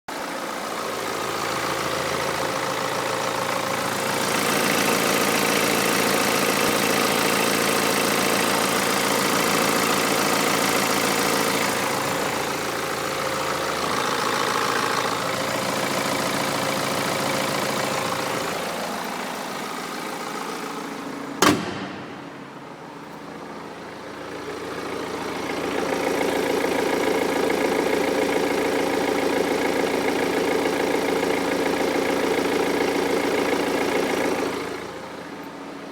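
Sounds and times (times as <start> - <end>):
diesel engine idling: 0.1 - 35.9
sharp knock: 21.4 - 22.4.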